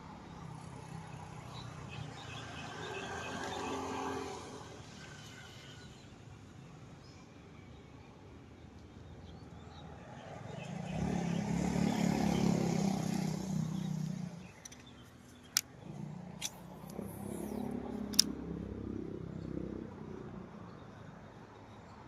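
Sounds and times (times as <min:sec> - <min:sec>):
motor vehicles passing: 0:00.0 - 0:05.5, 0:09.6 - 0:21.5
sharp clicks: 0:14.0 - 0:18.4.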